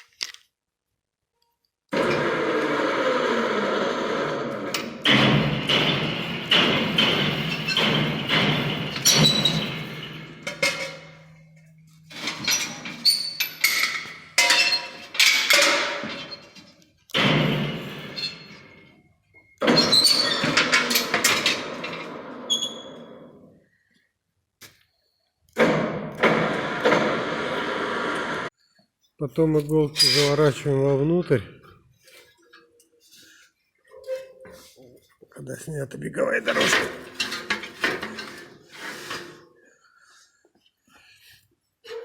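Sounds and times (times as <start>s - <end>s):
metal knocks and clanks: 4.7s - 18.9s, 19.6s - 23.3s, 25.6s - 27.4s, 36.5s - 39.2s.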